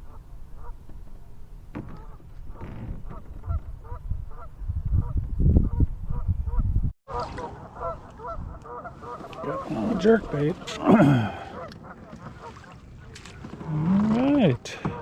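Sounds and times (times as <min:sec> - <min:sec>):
wind rumbling on microphone: 0:00.0 - 0:10.5
geese honking: 0:05.7 - 0:13.3.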